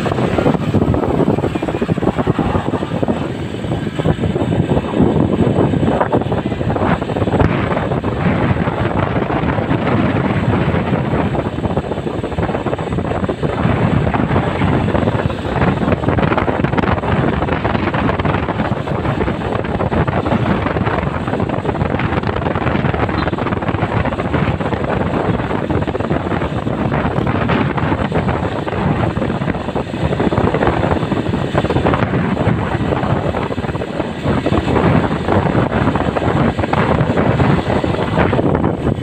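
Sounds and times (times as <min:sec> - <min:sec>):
vehicle and road noise: 0:00.0 - 0:39.0
wind buffeting microphone: 0:00.0 - 0:39.0.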